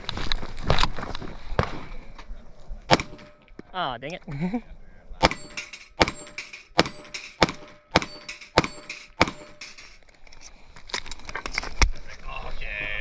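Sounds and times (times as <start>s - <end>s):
airsoft pistol shots: 2.9s - 3.4s, 5.2s - 9.8s.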